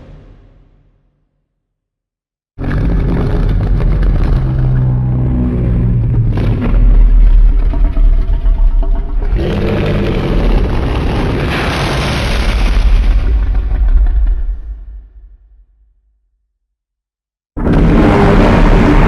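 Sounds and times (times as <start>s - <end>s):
deep rumbling monster roar: 2.6s - 15.4s, 17.6s - 19.0s
harsh layered blast: 9.5s - 13.4s, 17.6s - 19.0s.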